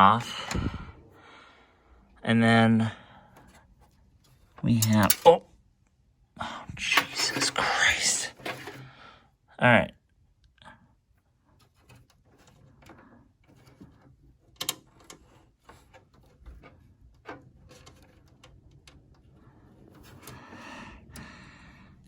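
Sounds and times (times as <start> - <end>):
small parts clicking and scraping: 3.3 - 5.4, 6.8 - 8.9, 11.5 - 22.0.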